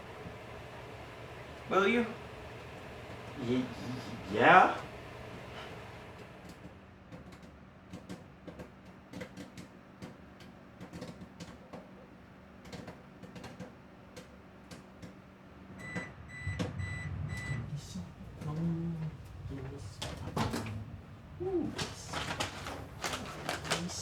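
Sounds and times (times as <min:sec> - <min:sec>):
microwave oven humming: 0:00.0 - 0:24.0
short electronic beeps: 0:15.8 - 0:17.7.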